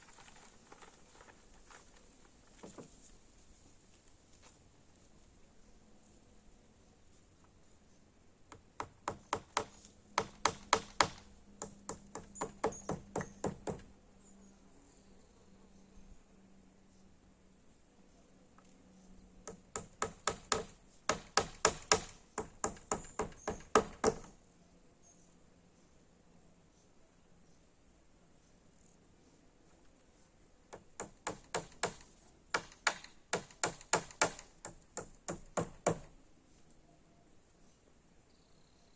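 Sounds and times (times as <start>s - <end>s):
hammer knocking: 8.8s - 13.8s, 19.5s - 24.3s
faint low hum: 36.1s - 38.9s.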